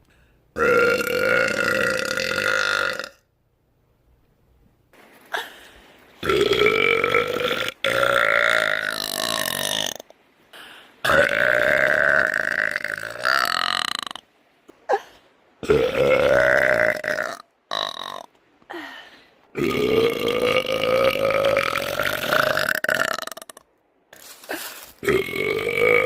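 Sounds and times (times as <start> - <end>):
woman belching: 0.6 - 3.2, 11.1 - 14.2, 15.6 - 18.3, 19.6 - 23.6, 25.0 - 26.0.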